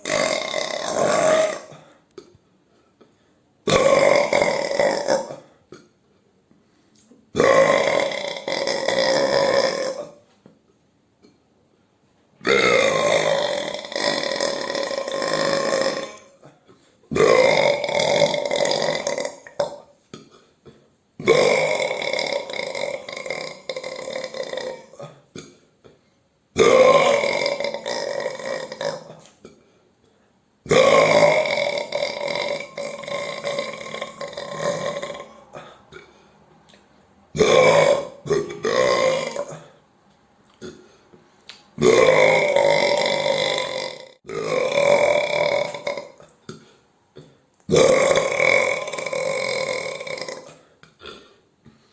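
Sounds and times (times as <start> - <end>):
person belching: 0.0 - 2.3, 3.7 - 5.9, 7.3 - 10.2, 12.4 - 20.5, 21.2 - 25.6, 26.6 - 29.6, 30.7 - 36.2, 37.3 - 39.8, 41.8 - 51.4.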